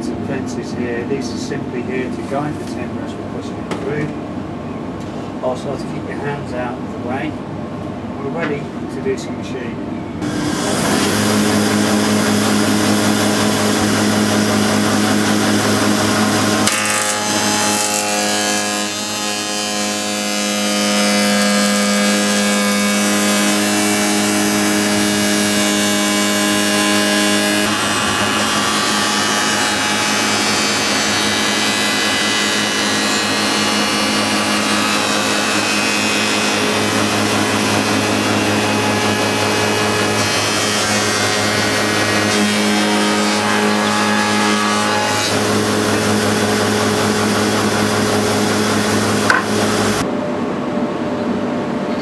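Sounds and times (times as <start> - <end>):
spindle moulder machine hum: 10.0 - 52.0
cutter cutting timber: 10.2 - 50.1.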